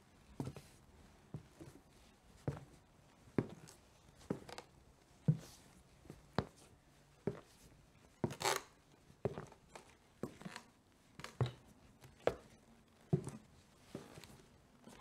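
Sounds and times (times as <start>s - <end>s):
shoe scuffing on wood: 5.3s - 5.6s
footsteps on wooden floorboards: 13.1s - 14.4s.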